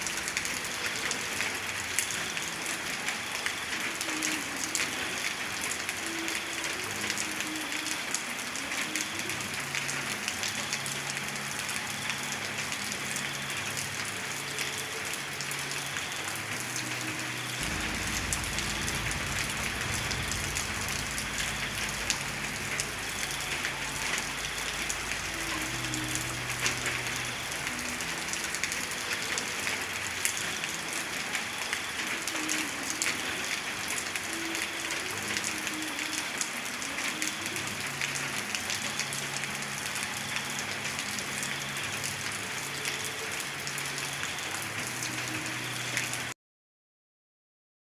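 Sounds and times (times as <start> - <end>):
steady rain: 0.0 - 46.4
low rumble: 17.6 - 25.4.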